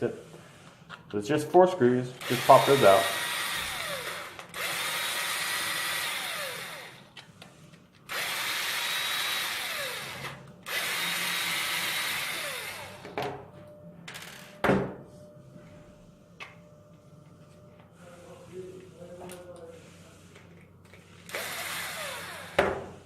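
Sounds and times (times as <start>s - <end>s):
electric screwdriver running: 2.2s - 7.1s, 8.1s - 13.2s, 21.2s - 22.7s.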